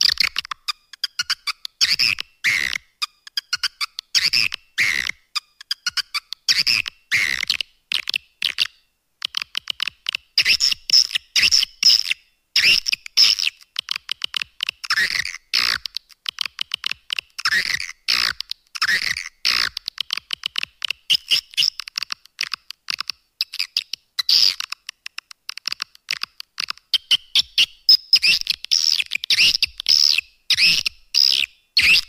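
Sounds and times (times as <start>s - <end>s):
rapid clicks: 15.6s - 27.1s.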